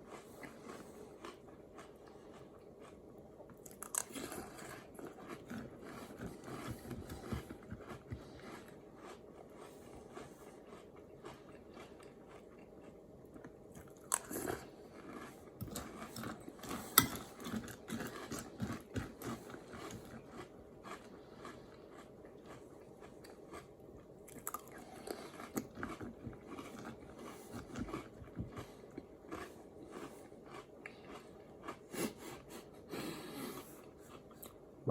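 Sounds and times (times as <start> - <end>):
person crunching and chewing cereal: 0.0 - 34.8.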